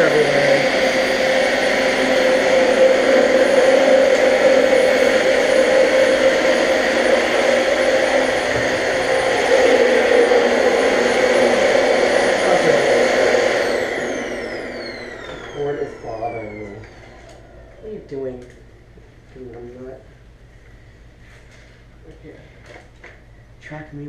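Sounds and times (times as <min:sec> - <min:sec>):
vacuum cleaner running: 0:00.0 - 0:18.8.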